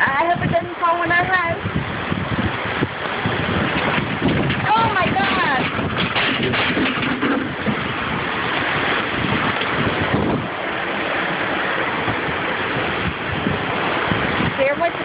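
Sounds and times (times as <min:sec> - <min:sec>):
storm wind rushing: 0:00.0 - 0:15.0
wind buffeting microphone: 0:00.0 - 0:15.0.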